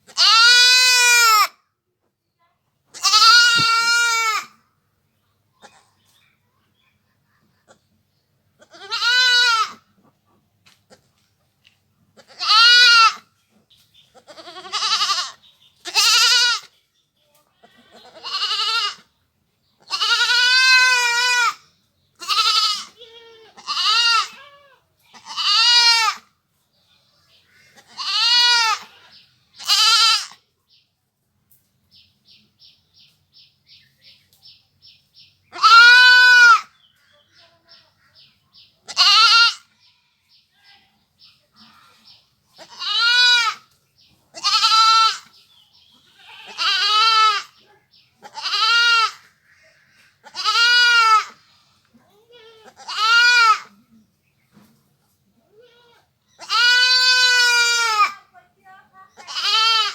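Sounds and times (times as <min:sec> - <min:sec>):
goat bleating: 0:00.0 - 0:01.6, 0:02.9 - 0:04.6, 0:08.6 - 0:09.9, 0:12.2 - 0:13.3, 0:14.1 - 0:16.8, 0:17.6 - 0:19.1, 0:19.8 - 0:21.6, 0:22.2 - 0:26.3, 0:27.5 - 0:30.4, 0:35.5 - 0:36.8, 0:38.8 - 0:39.7, 0:41.6 - 0:43.7, 0:44.3 - 0:53.8, 0:55.6 - 0:58.3, 0:59.1 - 0:59.9.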